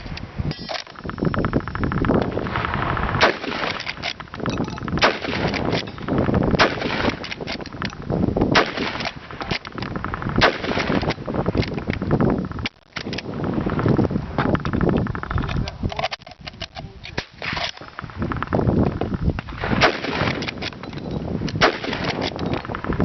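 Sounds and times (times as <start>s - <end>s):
rifle action clatter: 0.0s - 2.4s, 3.2s - 8.0s, 8.6s - 13.3s, 14.4s - 18.5s, 19.4s - 23.0s
rapid rifle shots: 0.7s - 7.9s, 8.5s - 11.9s, 19.6s - 20.8s, 21.6s - 23.0s.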